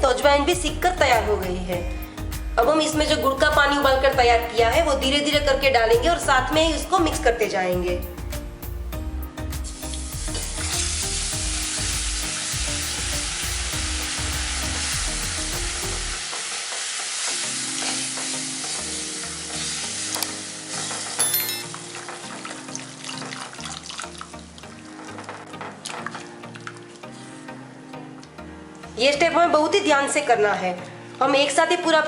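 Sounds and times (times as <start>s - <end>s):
liquid sizzling in a hot pan: 9.6s - 27.0s.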